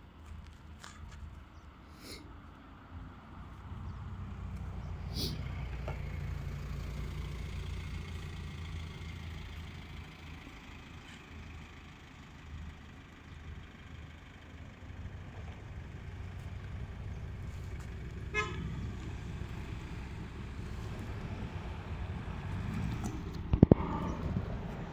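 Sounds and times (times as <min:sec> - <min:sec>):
vehicle engine rumbling: 0:00.0 - 0:24.9
horn toot: 0:18.3 - 0:18.7.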